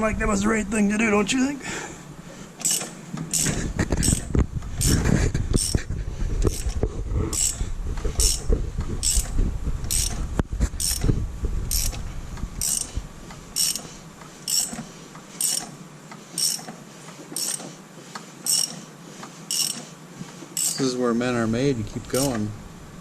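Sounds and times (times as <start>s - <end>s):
ratchet wrench clicking: 2.6s - 5.0s, 5.6s - 5.8s, 6.5s - 6.8s, 7.4s - 7.6s, 8.2s - 9.3s, 9.9s - 10.2s, 10.8s - 11.1s, 11.7s - 12.0s, 12.6s - 13.0s, 13.6s - 14.8s, 15.4s - 15.7s, 16.4s - 16.7s, 17.4s - 17.7s, 18.4s - 18.8s, 19.5s - 19.9s, 20.6s - 20.9s
low rumble: 3.6s - 13.6s.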